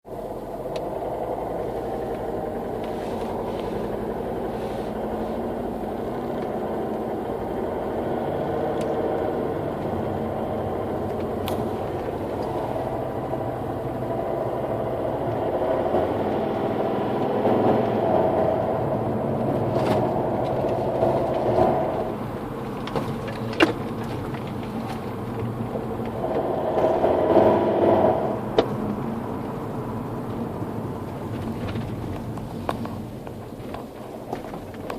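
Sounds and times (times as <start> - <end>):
diesel engine running: 0.1 - 34.9.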